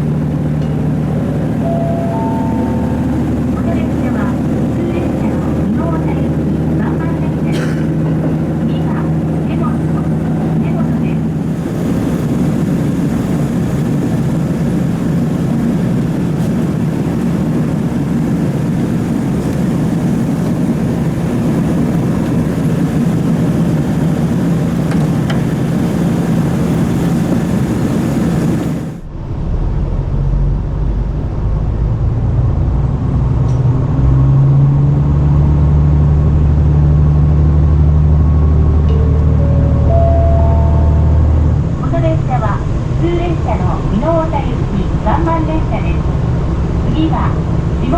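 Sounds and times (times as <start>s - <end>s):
train wheels on rails: 0.0s - 29.0s
diesel engine drone: 0.0s - 47.9s.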